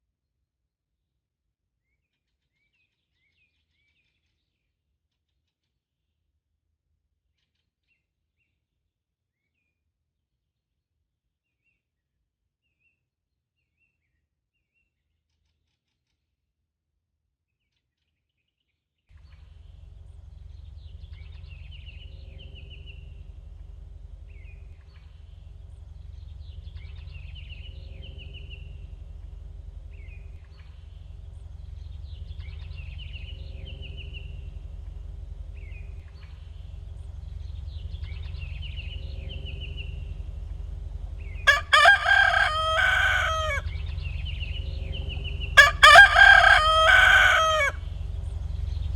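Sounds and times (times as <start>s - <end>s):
low steady rumble: 19.2s - 48.9s
rooster crowing: 41.4s - 43.8s, 45.6s - 47.9s.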